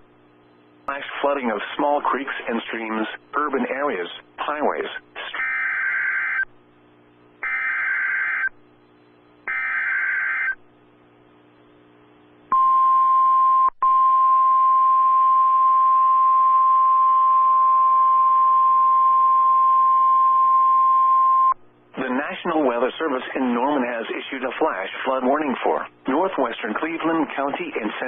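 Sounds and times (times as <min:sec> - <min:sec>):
steady alarm tone: 0:05.4 - 0:06.5, 0:07.4 - 0:08.6, 0:09.4 - 0:10.6.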